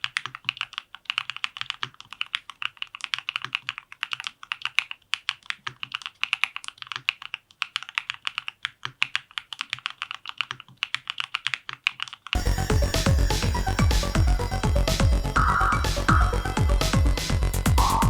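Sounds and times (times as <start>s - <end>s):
mechanical keyboard typing: 0.0s - 12.3s
electronic music with heavy beat: 12.4s - 18.0s.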